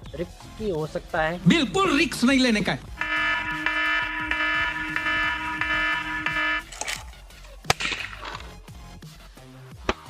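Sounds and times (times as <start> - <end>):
buzzer-like tone: 3.0 - 6.7.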